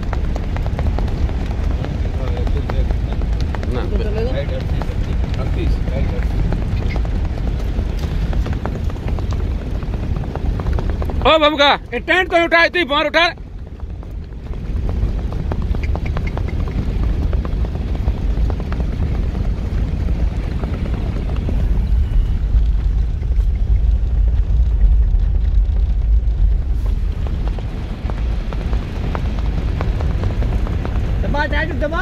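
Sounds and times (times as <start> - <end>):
vehicle running: 0.0 - 32.0
wind buffeting microphone: 0.0 - 32.0
faint irregular clicks: 13.4 - 19.6.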